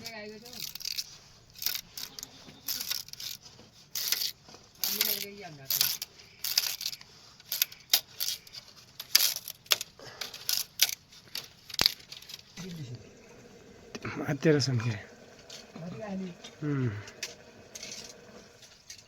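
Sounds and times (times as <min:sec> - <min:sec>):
clinks and clatters: 0:00.0 - 0:12.6, 0:13.9 - 0:19.0
faint voice: 0:15.8 - 0:17.2.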